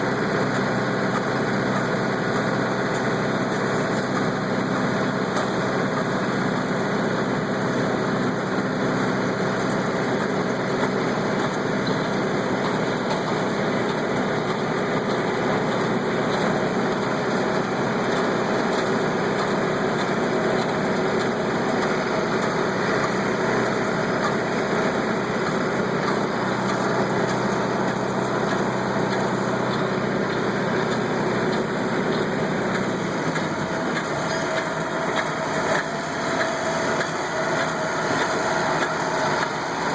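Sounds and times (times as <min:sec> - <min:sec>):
hay baler clatter: 0:00.0 - 0:39.9
tractor diesel engine running: 0:00.0 - 0:39.9.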